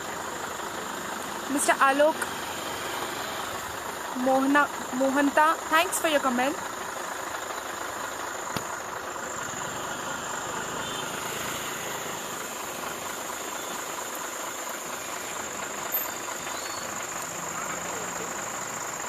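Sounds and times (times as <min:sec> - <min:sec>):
engine humming: 0:00.0 - 0:19.0.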